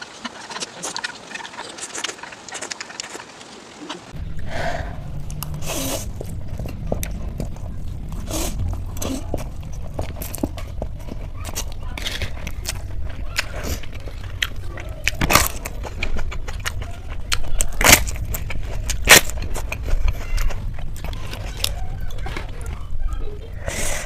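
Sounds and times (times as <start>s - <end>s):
noodles slurped: 0.0s - 4.2s, 7.8s - 22.8s
wet chewing mouth sounds: 0.0s - 24.0s.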